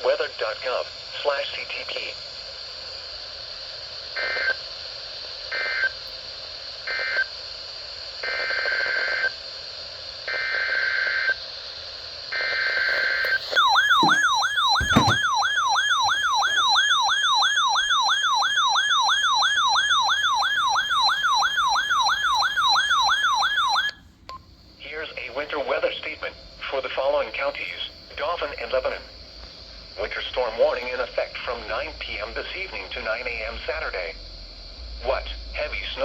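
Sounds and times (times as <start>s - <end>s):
thump: 13.4s - 15.4s.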